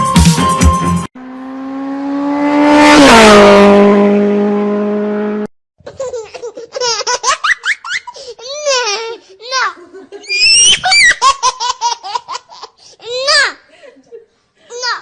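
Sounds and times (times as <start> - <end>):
music: 0.0 - 1.1
vehicle driving past fast: 1.2 - 5.5.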